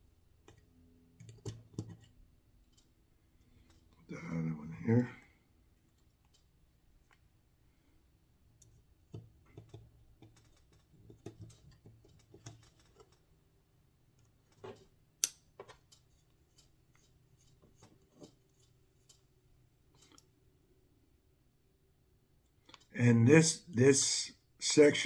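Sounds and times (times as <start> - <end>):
small screws clicking and tapping: 0.4 - 4.0, 5.8 - 7.2, 8.6 - 13.3, 14.2 - 19.3.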